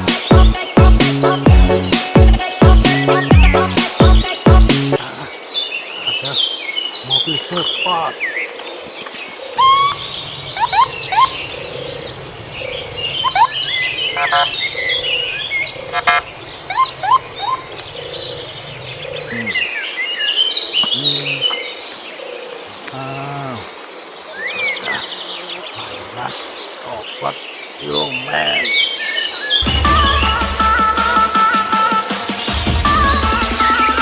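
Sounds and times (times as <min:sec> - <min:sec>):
small birds chirping: 0:00.0 - 0:31.2
high insect buzz: 0:09.6 - 0:17.9, 0:22.7 - 0:28.3.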